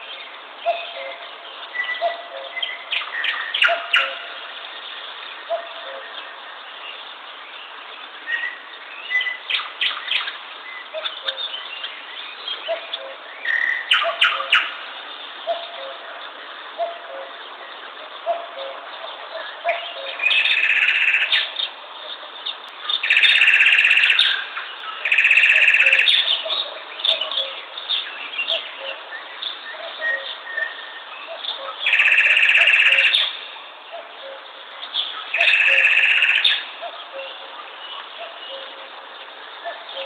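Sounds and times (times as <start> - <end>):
birdsong: 0.0 - 40.0
cuckoo calling: 0.6 - 4.4, 5.4 - 6.2, 12.7 - 16.2, 16.8 - 17.4, 18.0 - 22.4, 23.0 - 34.6, 35.2 - 39.0, 39.6 - 40.0.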